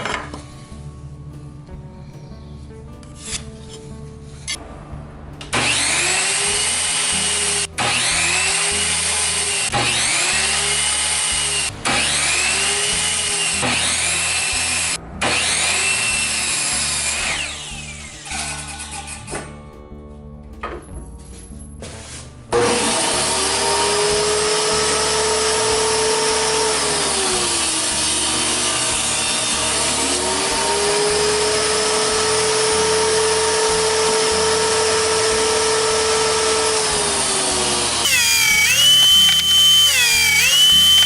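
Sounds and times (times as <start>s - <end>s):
power saw cutting wood: 5.4s - 19.5s, 22.5s - 41.0s
high-pitched power tool whine: 5.5s - 19.2s, 22.6s - 41.0s.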